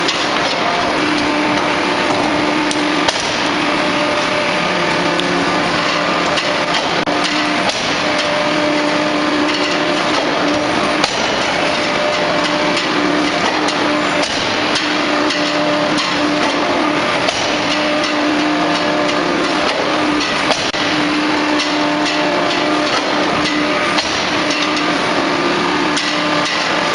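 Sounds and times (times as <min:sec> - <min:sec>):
press hum rising and dropping: 0:00.0 - 0:14.8
forging press din: 0:00.0 - 0:26.9.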